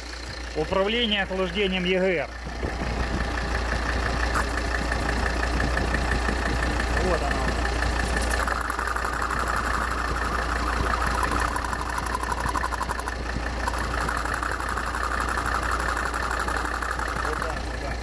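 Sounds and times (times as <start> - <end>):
diesel engine idling: 0.0 - 18.0
fast rattling flap: 4.4 - 18.0.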